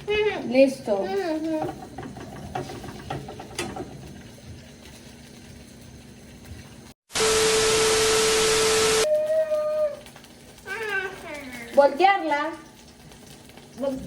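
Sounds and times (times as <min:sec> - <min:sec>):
static hiss with beep: 0:07.1 - 0:09.0.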